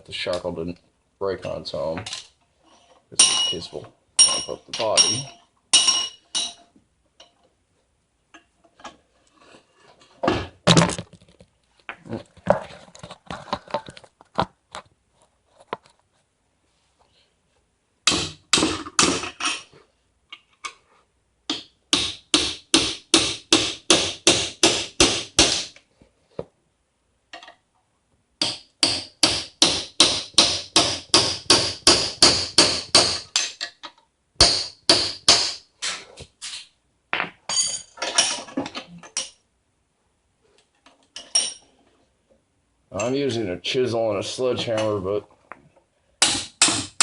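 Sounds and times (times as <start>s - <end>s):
sledgehammer striking metal chisel: 3.2s - 6.6s, 18.1s - 19.7s, 21.5s - 25.8s, 28.4s - 33.6s, 34.4s - 35.6s, 46.2s - 47.0s.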